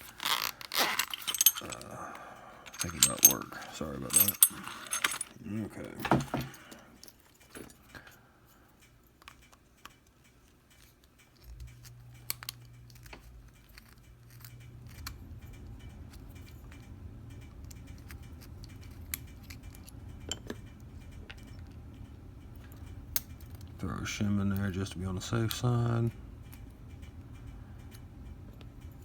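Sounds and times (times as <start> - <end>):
low steady hum: 0.0 - 29.0
small metal clicks and taps: 9.2 - 23.7.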